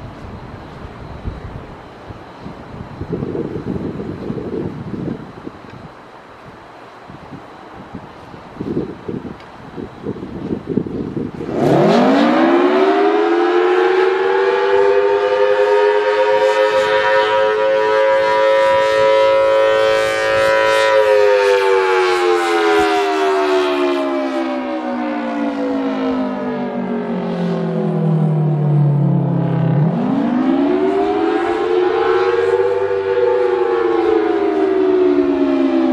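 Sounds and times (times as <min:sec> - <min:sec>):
wind rumble on microphone: 0:00.0 - 0:13.2, 0:16.7 - 0:21.8
two-tone civil defense siren: 0:00.0 - 0:35.9.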